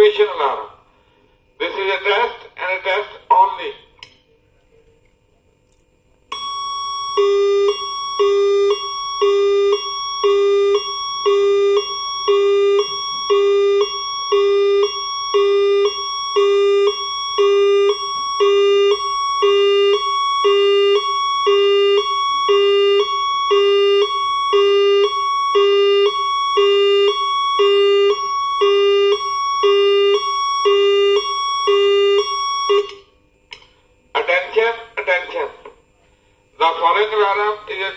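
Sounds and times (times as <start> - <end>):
two-tone alarm signal: 6.3 - 33.2.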